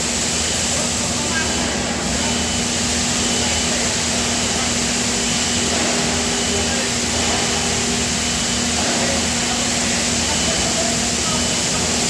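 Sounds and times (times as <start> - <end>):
factory machinery drone: 0.0 - 12.0.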